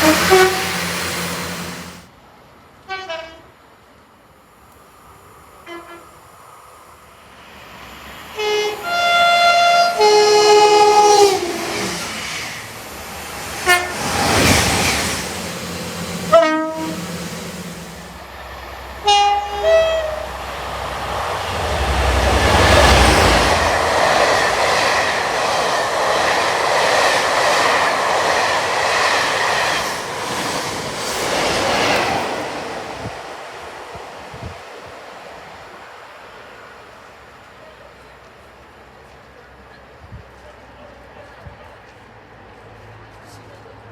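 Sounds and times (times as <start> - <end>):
train horn: 0.0 - 2.0, 2.9 - 3.5, 5.6 - 6.2, 8.4 - 12.0, 13.6 - 14.6, 16.1 - 18.1, 19.0 - 20.4
train wheels on rails: 0.0 - 2.1, 4.6 - 43.9.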